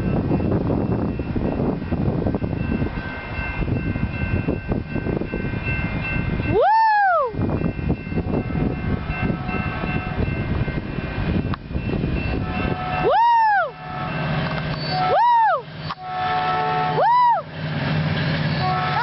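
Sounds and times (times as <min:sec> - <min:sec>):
train rumbling over track: 0:00.0 - 0:19.0
person whooping: 0:06.5 - 0:07.4, 0:13.1 - 0:13.8, 0:15.0 - 0:15.7, 0:17.0 - 0:17.5.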